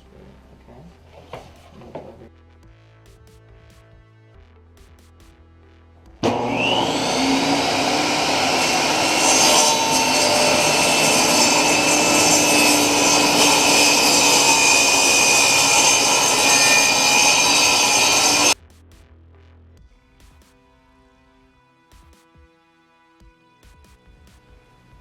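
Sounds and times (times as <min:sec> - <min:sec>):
power saw cutting wood: 0:06.2 - 0:18.6.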